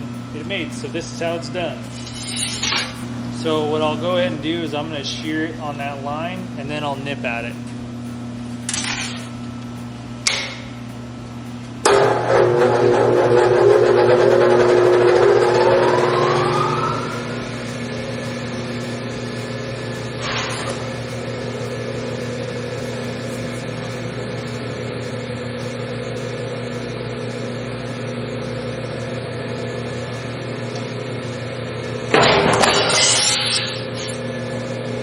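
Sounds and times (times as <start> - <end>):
electric motor humming: 0.0 - 35.0
shear cutting steel sheet: 1.8 - 3.1, 11.8 - 24.6, 32.1 - 34.2.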